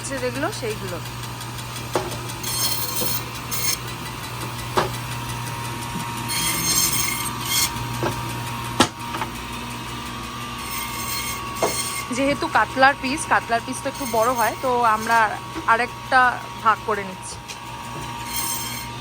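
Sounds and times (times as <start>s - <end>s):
band saw motor hum: 0.0s - 19.0s
saw rasping through fish: 2.3s - 4.0s, 6.2s - 7.9s, 10.6s - 16.8s, 18.1s - 19.0s.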